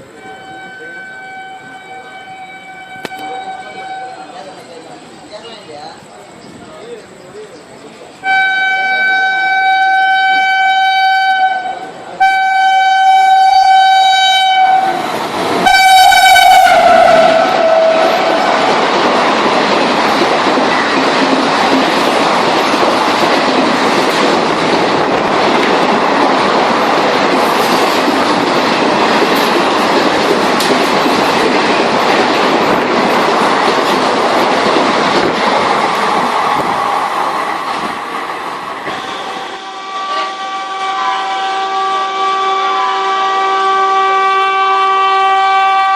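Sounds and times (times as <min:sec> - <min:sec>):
train horn blasts: 0:00.1 - 0:04.3, 0:08.2 - 0:18.6, 0:38.9 - 0:45.9
train carriages rattling on rails: 0:14.5 - 0:40.6.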